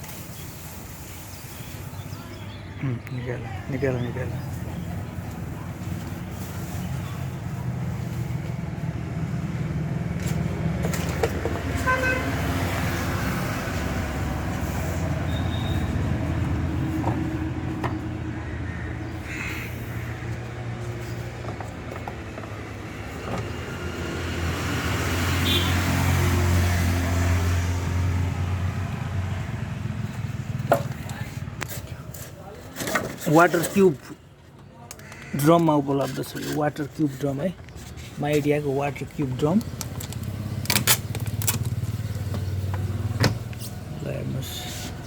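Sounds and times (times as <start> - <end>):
road traffic: 0.0 - 45.0
vehicle engine humming: 1.6 - 32.6, 33.4 - 45.0
car horn toot: 11.8 - 12.6, 15.3 - 16.0, 25.4 - 25.8.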